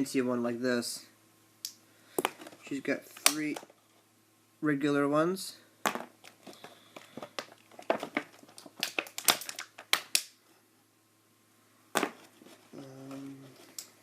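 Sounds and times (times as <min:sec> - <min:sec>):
toy packaging crinkling: 0:06.3 - 0:10.3.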